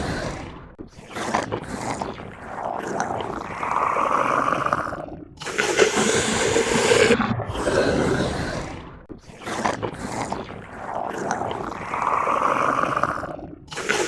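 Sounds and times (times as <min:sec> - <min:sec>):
monster growling: 0:00.0 - 0:00.6, 0:05.9 - 0:09.1.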